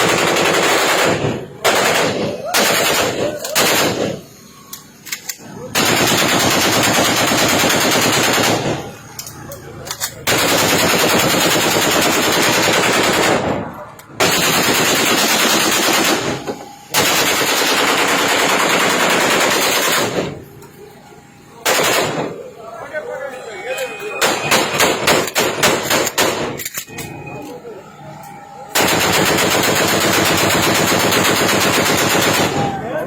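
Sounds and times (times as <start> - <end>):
automatic gunfire bursts: 0.0 - 4.3, 5.7 - 9.0, 10.2 - 20.3, 21.6 - 22.4, 24.2 - 26.6, 28.8 - 32.8.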